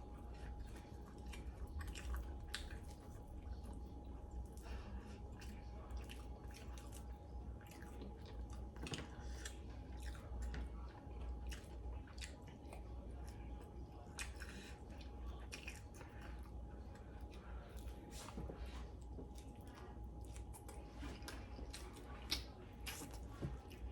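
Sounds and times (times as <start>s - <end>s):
chewing and mouth smacks: 0.0s - 23.9s.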